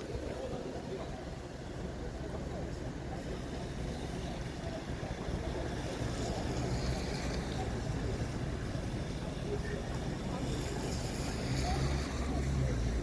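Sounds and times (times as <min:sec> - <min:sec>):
passing vehicles rumble: 0:00.0 - 0:13.0
vehicle passing by with hiss: 0:03.2 - 0:13.0.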